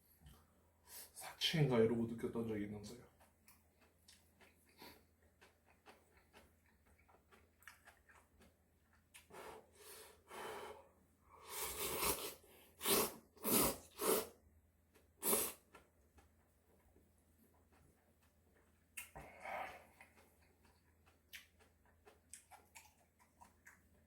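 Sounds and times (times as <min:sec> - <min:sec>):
person breathing softly: 0:09.3 - 0:11.5, 0:19.2 - 0:20.0.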